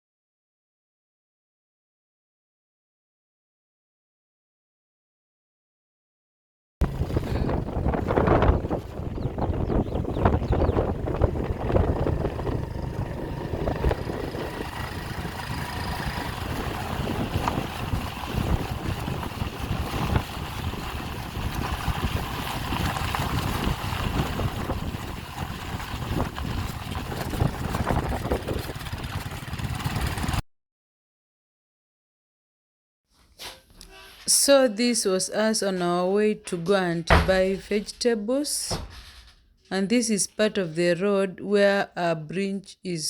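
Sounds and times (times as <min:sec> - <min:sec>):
vehicle rumble: 0:06.8 - 0:30.4
wind buffeting microphone: 0:06.8 - 0:30.4.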